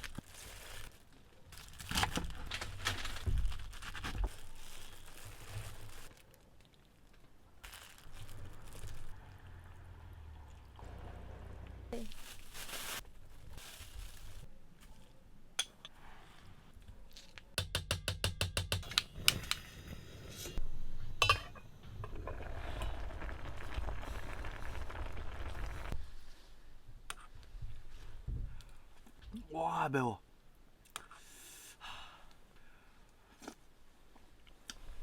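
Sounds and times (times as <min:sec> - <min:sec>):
dishes and utensils clinking: 0:21.2 - 0:22.4.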